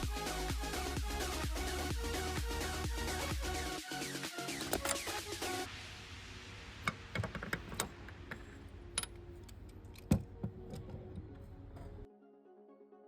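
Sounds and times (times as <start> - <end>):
background music: 0.0 - 13.0
sharp clicks and knocks: 4.7 - 5.2, 6.8 - 12.1.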